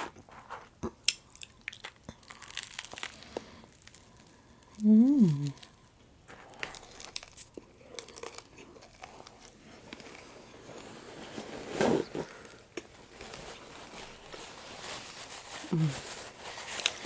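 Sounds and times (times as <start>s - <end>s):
soft chewing: 0.0s - 10.9s.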